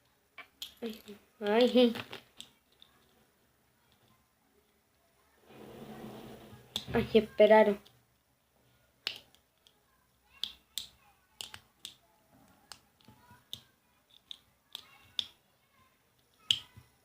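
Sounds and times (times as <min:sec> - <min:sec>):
small clicks and taps of toy box: 0:00.4 - 0:03.2, 0:10.4 - 0:15.4.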